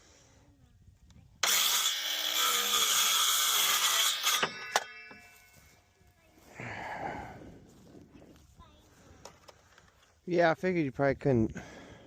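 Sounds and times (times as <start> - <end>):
power tool running: 1.4 - 5.4.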